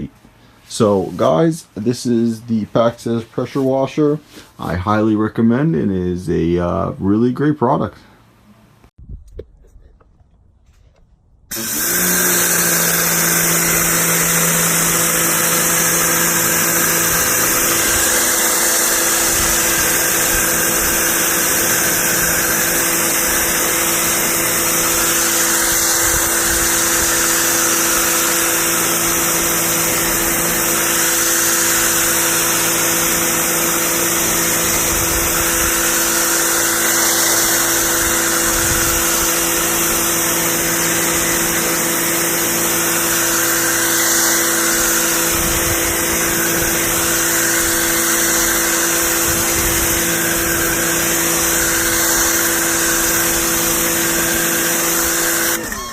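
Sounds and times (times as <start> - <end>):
motor hum: 8.6 - 55.9
loud hiss of spray: 11.5 - 55.6
pressure washer running: 11.5 - 55.9.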